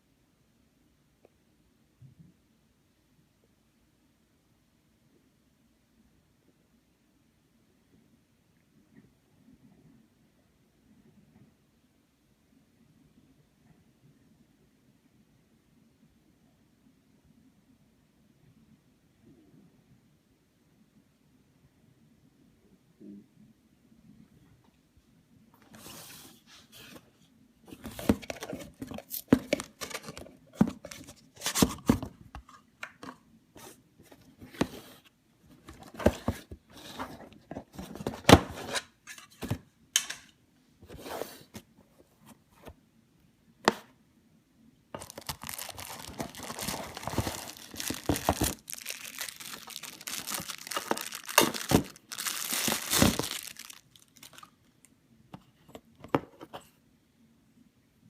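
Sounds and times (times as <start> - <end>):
plastic and paper crinkling: 27.7 - 38.8, 45.0 - 54.6.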